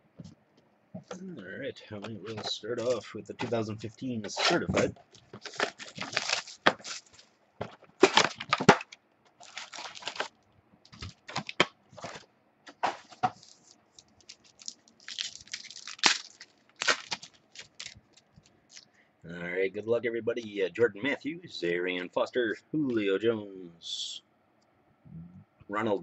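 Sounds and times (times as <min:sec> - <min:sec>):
foil packs tearing and crinkling: 0:04.4 - 0:07.3, 0:08.0 - 0:10.3, 0:10.9 - 0:12.2, 0:12.8 - 0:18.8.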